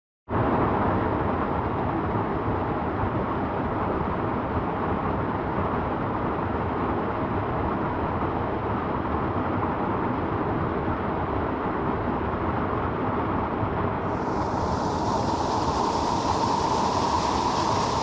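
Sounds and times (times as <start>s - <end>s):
waterfall rushing and splashing: 14.1s - 18.0s.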